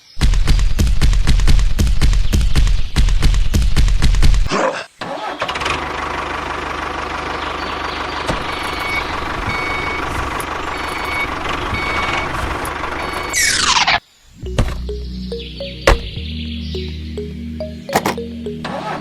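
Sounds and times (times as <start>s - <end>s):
engine running with whine: 5.5s - 13.7s, 14.6s - 19.0s.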